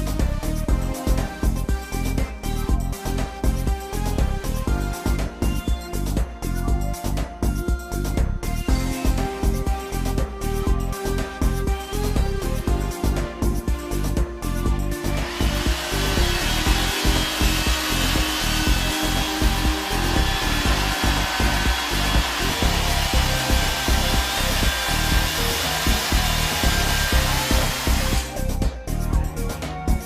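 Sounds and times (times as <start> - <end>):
background music beating: 0.0 - 30.0
power tool whirring on wood: 15.0 - 28.4.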